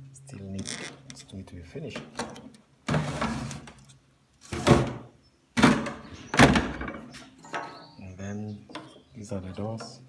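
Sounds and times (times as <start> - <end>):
wooden board scraping wood: 2.9 - 5.0.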